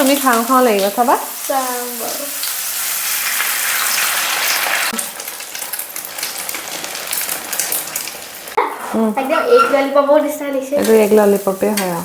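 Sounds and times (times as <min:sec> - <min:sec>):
batter sizzling in hot oil: 0:00.0 - 0:08.6, 0:10.7 - 0:12.0
faint crackles: 0:03.9 - 0:09.0.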